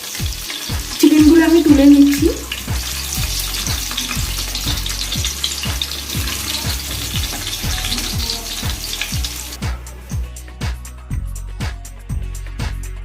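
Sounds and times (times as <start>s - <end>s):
chicken sizzling in hot oil: 0.0s - 10.2s
soft background music beat: 0.0s - 13.0s.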